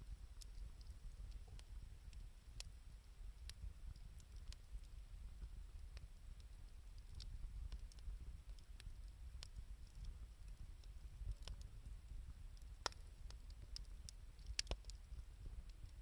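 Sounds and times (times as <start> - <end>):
low fire rumble: 0.0 - 16.0
wood fire crackling: 0.0 - 16.0
sharp pops and snaps: 12.6 - 16.0.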